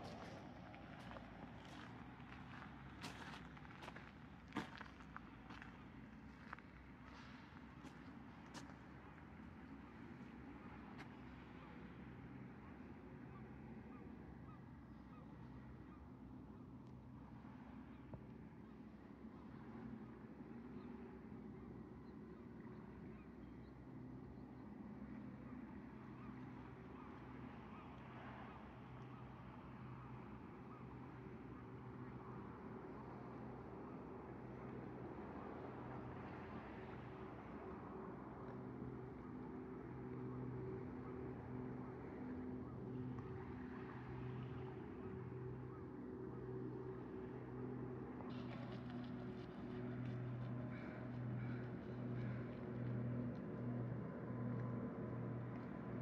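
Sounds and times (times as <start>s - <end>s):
faint low engine drone: 0.0s - 56.0s
low background rumble: 28.8s - 56.0s.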